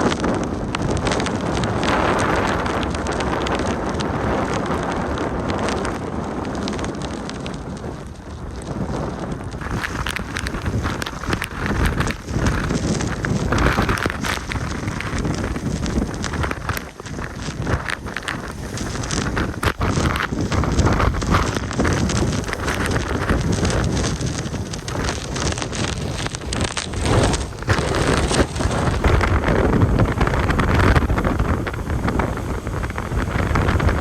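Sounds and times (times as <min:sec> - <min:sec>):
wind buffeting microphone: 0:00.0 - 0:34.0
spray ticking: 0:09.6 - 0:34.0.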